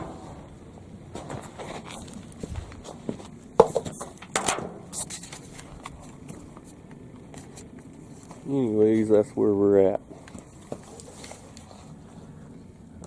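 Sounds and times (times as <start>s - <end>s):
footsteps: 0.0s - 4.2s
clatter of things being handled: 1.1s - 8.5s, 10.1s - 12.0s.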